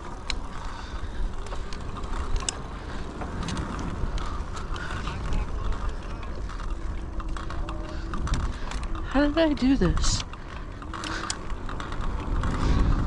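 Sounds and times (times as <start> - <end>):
electric bike parts rattling: 0.0 - 13.0
wind rumble on microphone: 0.0 - 13.0.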